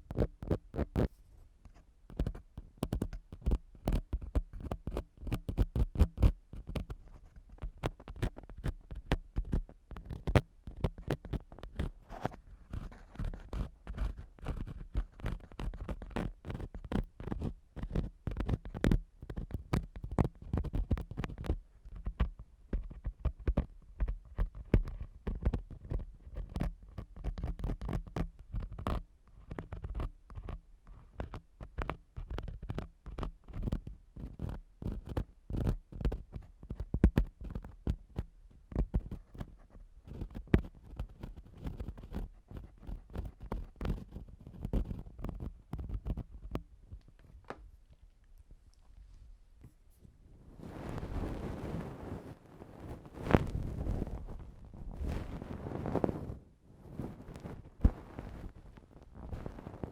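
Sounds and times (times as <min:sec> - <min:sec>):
ear pick scraping microphone: 0:38.9 - 0:47.4, 0:49.6 - 0:59.9
muffled thumps: 0:57.0 - 0:59.9.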